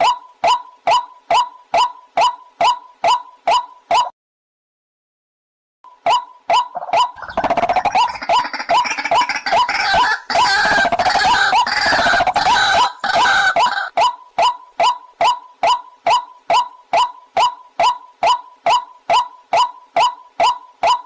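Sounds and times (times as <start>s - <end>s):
harsh croaking calls: 6.5s - 21.0s.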